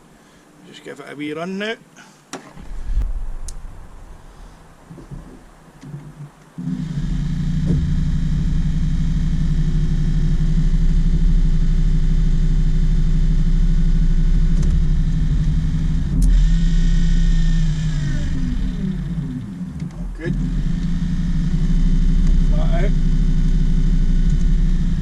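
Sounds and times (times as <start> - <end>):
electric trolling motor humming: 6.6 - 25.0.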